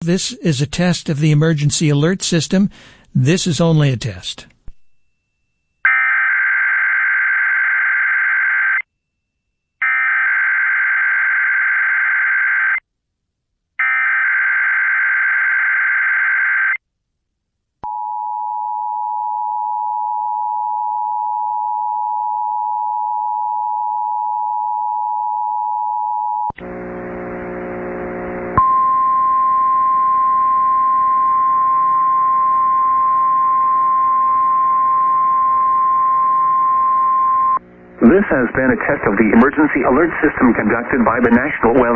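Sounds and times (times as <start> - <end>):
steady high tone: 28.6 - 40.0.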